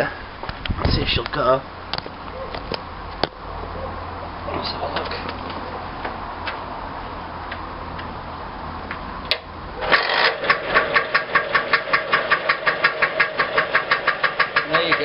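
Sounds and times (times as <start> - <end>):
scooter engine starting and idling: 9.3 - 15.0.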